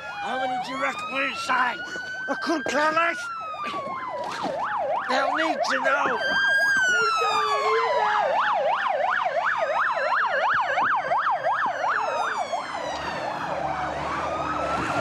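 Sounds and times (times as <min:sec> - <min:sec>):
siren sliding downward: 0:00.0 - 0:15.0
yelping siren: 0:00.0 - 0:15.0.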